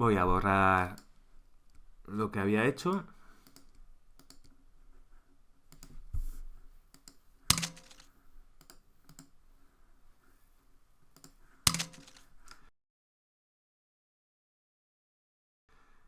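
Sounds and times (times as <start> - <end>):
computer mouse clicks: 2.9 - 4.6, 5.7 - 6.0, 6.9 - 9.4, 11.2 - 12.6
keyboard key presses: 7.0 - 9.3, 11.2 - 12.3.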